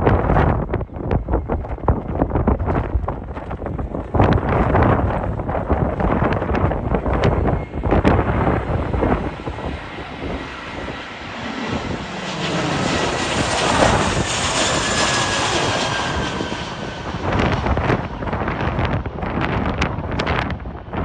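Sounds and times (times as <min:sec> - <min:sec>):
jet engines rushing: 0:00.0 - 0:21.0
wind buffeting microphone: 0:00.0 - 0:21.0.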